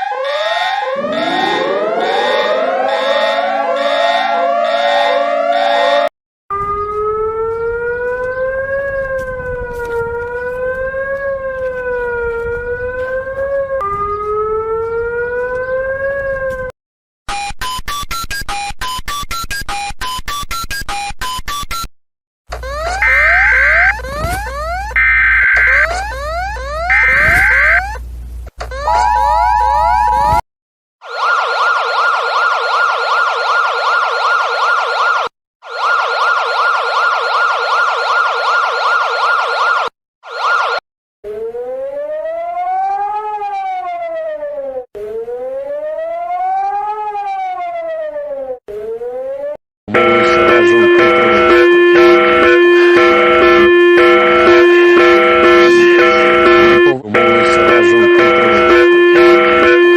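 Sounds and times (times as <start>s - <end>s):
siren rising and falling: 0.0s - 16.7s, 22.6s - 28.0s, 28.7s - 30.4s, 31.0s - 59.9s
two-tone attention beep: 50.0s - 59.9s
rapid short electronic beeps: 54.4s - 59.2s.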